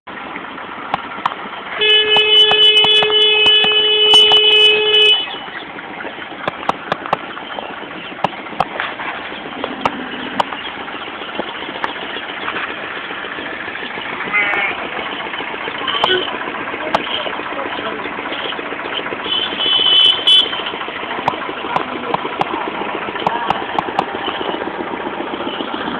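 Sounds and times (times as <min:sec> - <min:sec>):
sharp clicks and knocks: 0:00.9 - 0:01.5, 0:02.1 - 0:04.4, 0:06.4 - 0:07.3, 0:08.2 - 0:10.7, 0:11.3 - 0:12.8, 0:21.2 - 0:24.4
vehicle horn blast: 0:01.7 - 0:05.5, 0:15.8 - 0:17.5, 0:19.1 - 0:21.0.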